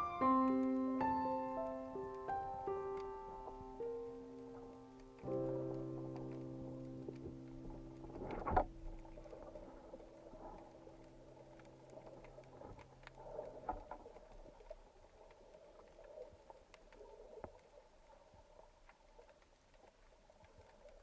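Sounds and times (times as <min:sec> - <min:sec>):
background music held notes: 0:00.0 - 0:10.7
small clicks and crackles: 0:00.0 - 0:21.0
underwater ambience: 0:00.0 - 0:21.0.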